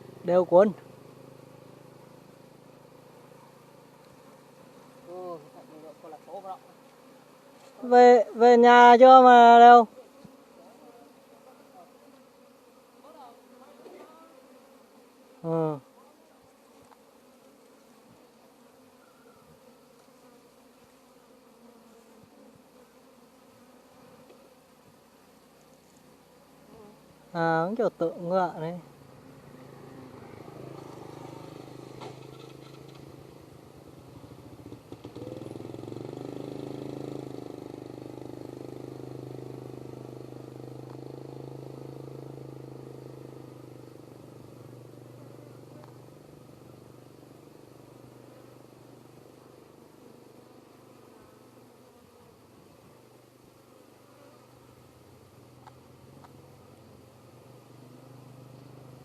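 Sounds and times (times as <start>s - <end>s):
honey bees buzzing: 0.0s - 59.0s
motorcycle engine running: 29.0s - 50.0s.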